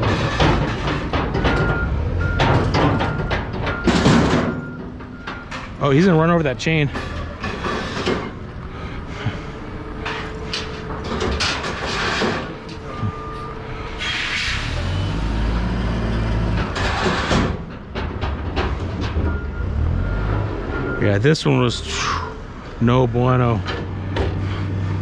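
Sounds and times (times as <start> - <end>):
scrap metal clanking and rattling: 0.0 - 20.9
large vehicle engine running: 0.0 - 25.0.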